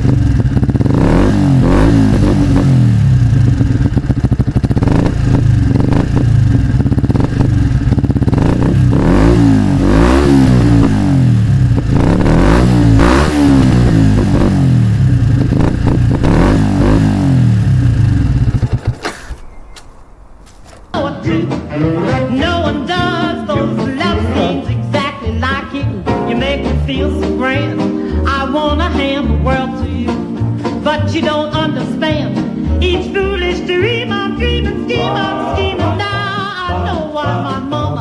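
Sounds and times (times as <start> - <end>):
motorcycle engine idling and revving: 0.0 - 21.0.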